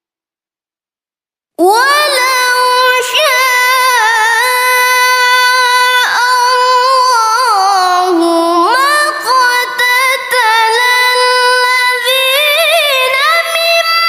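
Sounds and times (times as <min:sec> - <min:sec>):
person reciting melodically: 0:01.6 - 0:14.0.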